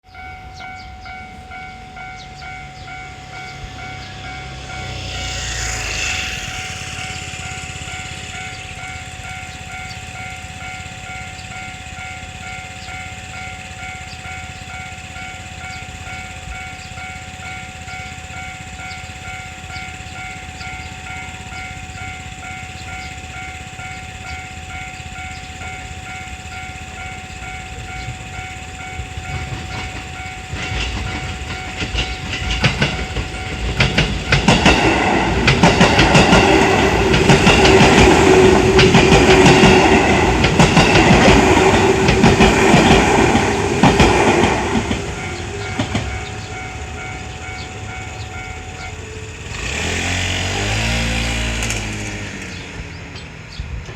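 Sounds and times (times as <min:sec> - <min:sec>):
railroad crossing alarm ringing: 0:00.0 - 0:53.9
steady whine from train: 0:00.0 - 0:53.9
lower sound: 0:00.6 - 0:12.1, 0:26.1 - 0:53.1
train wheels clattering over rail joints: 0:02.4 - 0:53.9.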